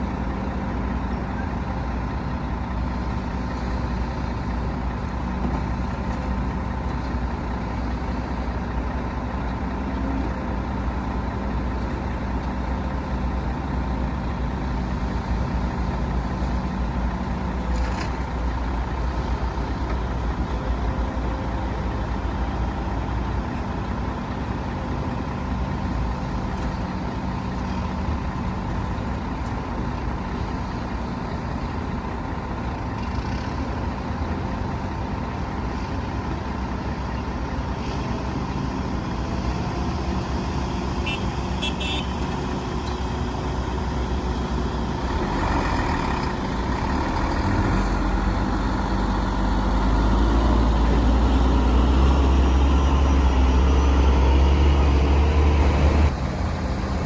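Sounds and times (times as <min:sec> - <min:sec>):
heavy diesel machinery running: 0:00.0 - 0:57.0.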